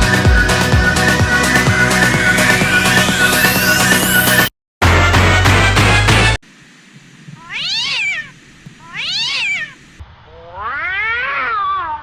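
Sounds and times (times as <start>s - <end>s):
cat meowing: 7.4s - 9.8s, 10.5s - 12.0s.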